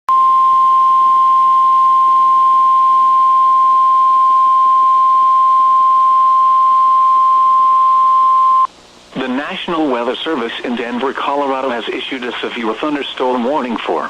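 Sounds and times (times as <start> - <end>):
steady high alarm tone: 0.1 - 8.7.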